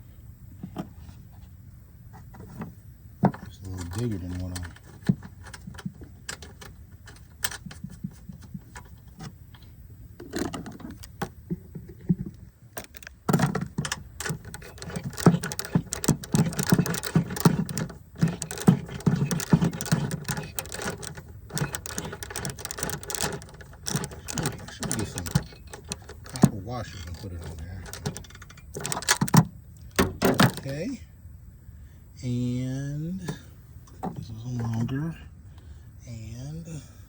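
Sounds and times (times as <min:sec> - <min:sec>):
metal parts clinking: 0:12.8 - 0:30.7.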